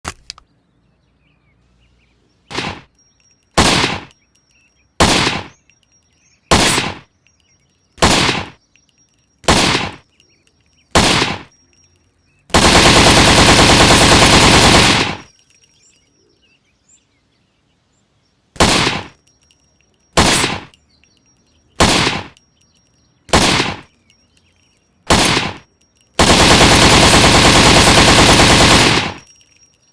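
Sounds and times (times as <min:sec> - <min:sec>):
rifle single shots: 0:02.5 - 0:02.9, 0:03.6 - 0:04.1, 0:05.0 - 0:05.5, 0:06.5 - 0:07.0, 0:08.0 - 0:08.6, 0:09.5 - 0:10.0, 0:11.0 - 0:11.5, 0:12.5 - 0:15.3, 0:18.6 - 0:19.2, 0:20.2 - 0:20.7, 0:21.8 - 0:22.4, 0:23.3 - 0:23.9, 0:25.1 - 0:25.6, 0:26.2 - 0:29.2
automatic gunfire burst: 0:03.6 - 0:04.1, 0:05.0 - 0:05.5, 0:06.5 - 0:07.0, 0:08.0 - 0:08.6, 0:09.5 - 0:10.0, 0:11.0 - 0:11.5, 0:12.5 - 0:15.3, 0:18.6 - 0:19.2, 0:20.2 - 0:20.7, 0:21.8 - 0:22.3, 0:23.3 - 0:23.8, 0:25.1 - 0:25.6, 0:26.2 - 0:29.3.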